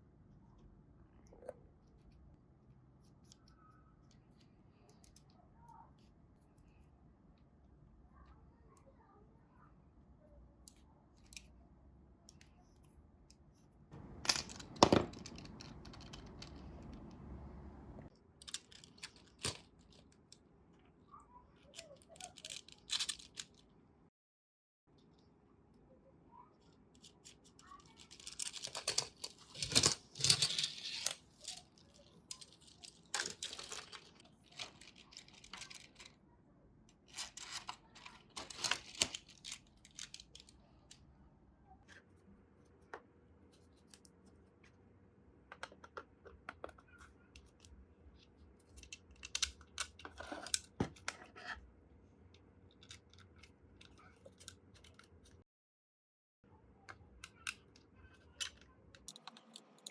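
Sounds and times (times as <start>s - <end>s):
scraping and rustling: 27.7s - 36.2s, 37.1s - 40.6s.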